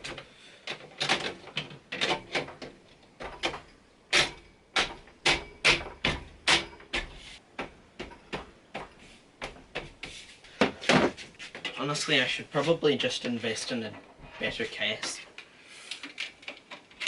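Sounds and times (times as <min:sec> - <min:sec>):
pc case panels knocking and clicking: 0:00.0 - 0:11.7.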